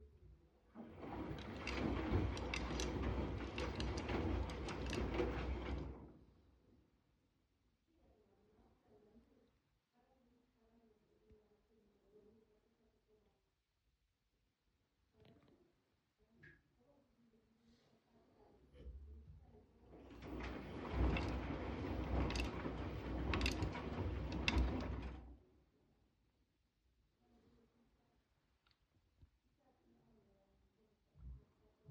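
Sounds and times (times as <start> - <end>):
washing machine drum rumbling: 0.9 - 6.2, 20.1 - 25.2.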